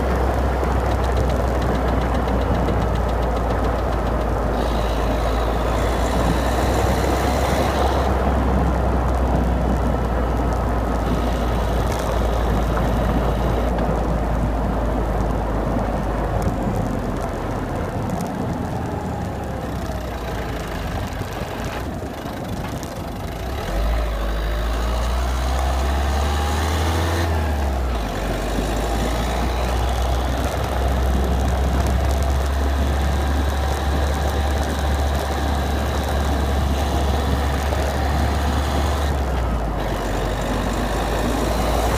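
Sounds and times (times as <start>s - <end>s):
clicking noise: 0.0s - 8.3s, 9.1s - 25.7s
diesel engine droning: 0.0s - 41.9s.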